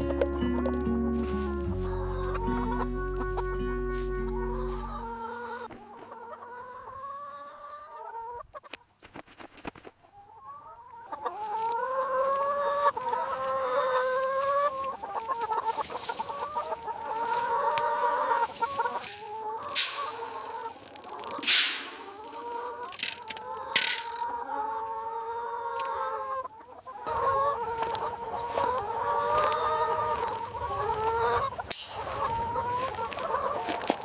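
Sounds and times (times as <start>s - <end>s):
background music low notes: 0.0s - 5.7s
chickens clucking: 0.0s - 34.0s
sharp clicks: 22.9s - 24.3s.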